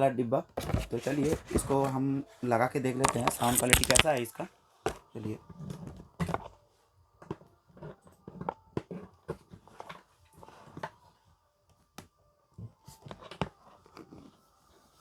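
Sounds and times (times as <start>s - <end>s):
speaker and cables being handled: 0.6s - 2.0s, 3.0s - 4.2s.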